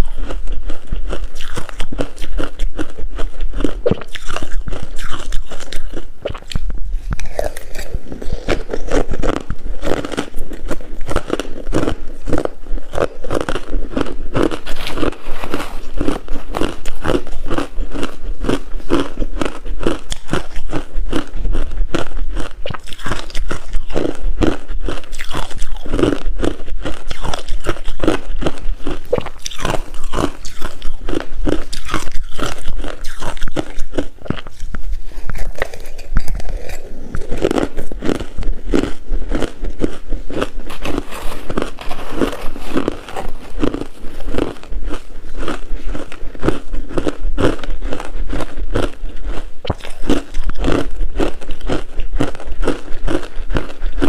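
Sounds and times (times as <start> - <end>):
ice crunching in mouth: 0.0 - 54.0.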